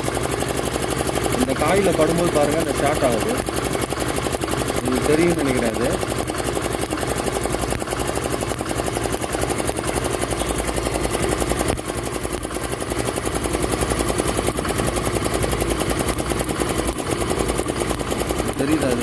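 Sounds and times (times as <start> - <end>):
scooter engine idling: 0.0 - 19.0.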